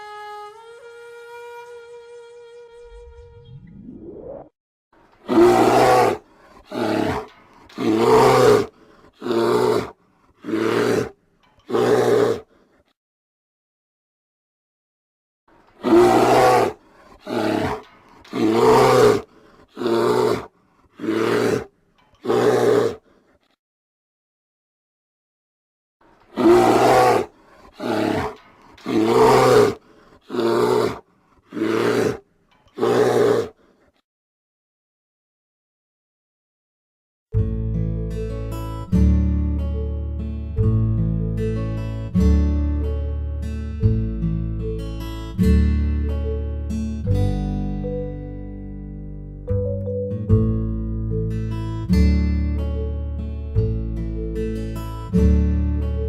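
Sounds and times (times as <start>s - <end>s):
bear roaring: 5.2s - 12.6s, 15.8s - 23.1s, 26.3s - 33.7s.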